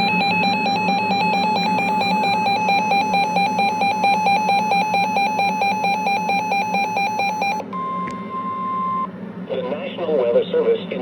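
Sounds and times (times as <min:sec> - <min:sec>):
steady alert tone: 0:00.0 - 0:07.6.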